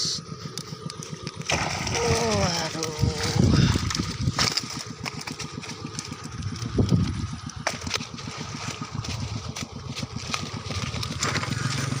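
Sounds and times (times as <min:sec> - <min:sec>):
small engine idling: 0:00.0 - 0:12.0
steady hum: 0:00.0 - 0:12.0.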